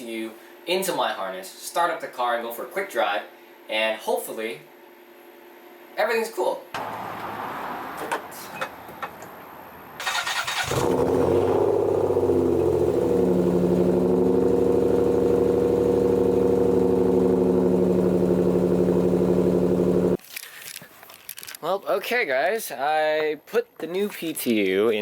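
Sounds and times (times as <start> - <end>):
starter cranking engine: 10.0 - 20.2
car engine idling: 10.4 - 20.2.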